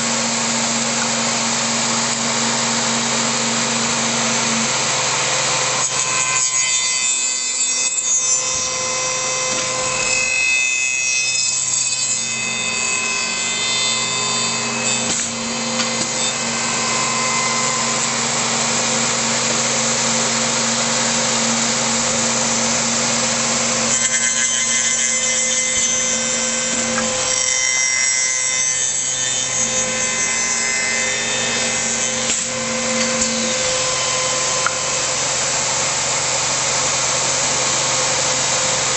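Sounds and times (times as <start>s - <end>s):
woodworking machine cutting wood: 0.0s - 38.9s.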